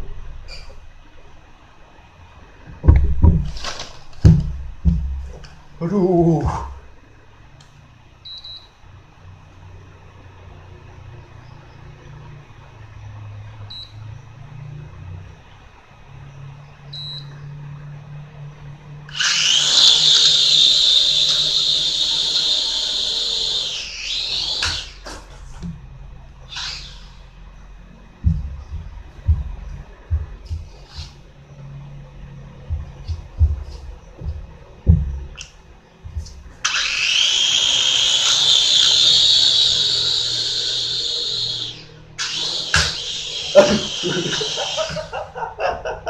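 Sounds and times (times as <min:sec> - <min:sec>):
drone motors whining: 0:00.0 - 0:07.1, 0:09.6 - 0:46.0
toy drone motors whining: 0:19.1 - 0:25.4, 0:26.5 - 0:27.4, 0:36.6 - 0:45.2.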